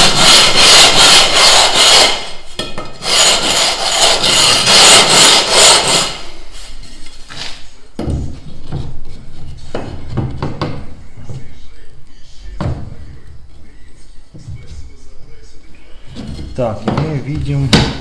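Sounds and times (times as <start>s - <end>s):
hand tool scraping stone tile: 0.0s - 6.3s.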